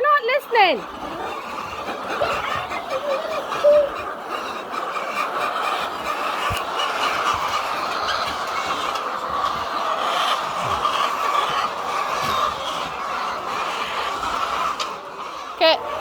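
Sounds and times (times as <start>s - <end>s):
hens clucking: 0.0s - 16.0s
short pitched calls: 3.0s - 4.1s.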